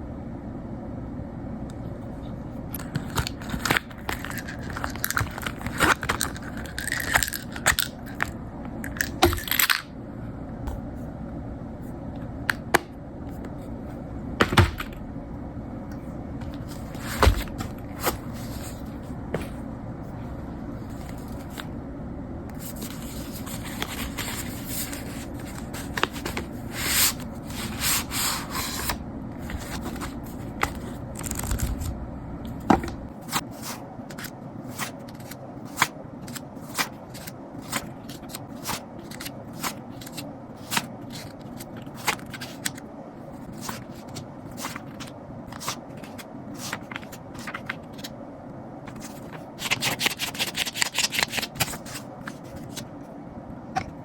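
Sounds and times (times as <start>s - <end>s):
paper rustling and scraping: 2.8s - 8.2s, 16.4s - 19.6s, 22.6s - 31.9s, 33.2s - 48.1s, 48.9s - 53.0s.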